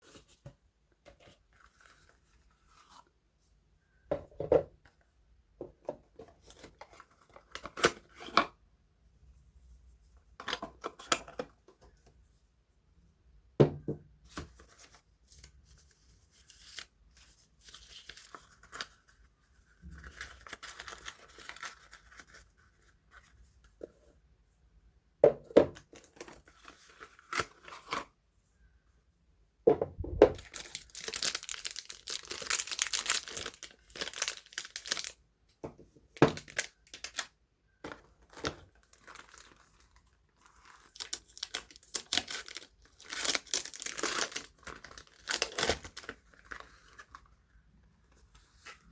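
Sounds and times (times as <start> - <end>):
packaging crinkling and tearing: 20.0 - 22.9, 30.4 - 35.2, 36.3 - 37.3, 38.2 - 47.2.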